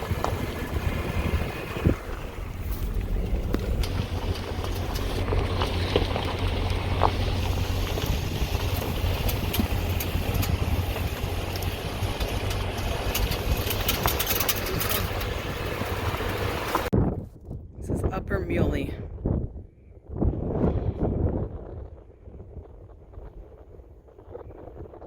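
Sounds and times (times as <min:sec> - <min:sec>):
car engine and tyres on dirt road: 0:00.0 - 0:25.0
small clicks and rattles: 0:02.8 - 0:16.9.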